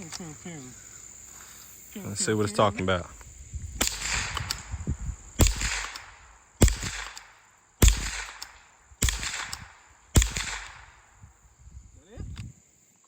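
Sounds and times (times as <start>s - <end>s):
rifle shots echoing: 3.8s - 4.8s, 5.4s - 11.2s.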